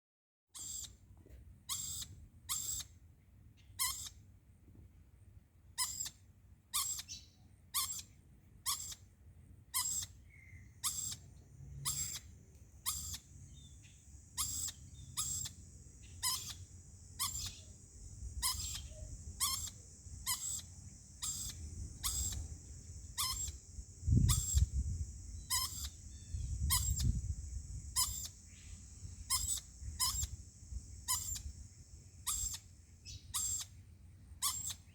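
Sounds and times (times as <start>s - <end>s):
steady high hiss: 12.3s - 32.9s.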